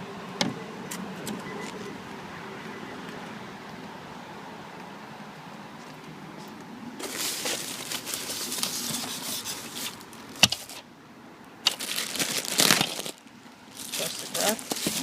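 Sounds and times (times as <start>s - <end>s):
plastic wrap crinkling: 7.0s - 10.0s, 11.7s - 15.0s.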